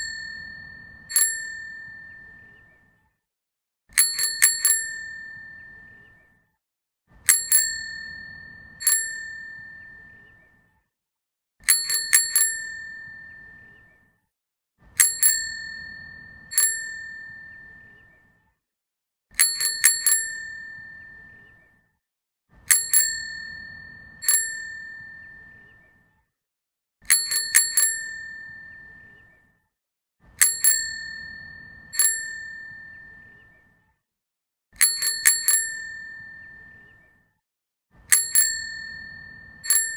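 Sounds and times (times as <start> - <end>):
bicycle bell ringing: 0.0 - 2.6, 4.0 - 6.0, 7.3 - 10.2, 11.6 - 13.7, 15.0 - 18.0, 19.4 - 21.4, 22.7 - 25.6, 27.1 - 29.2, 30.4 - 33.4, 34.8 - 36.9, 38.1 - 39.9.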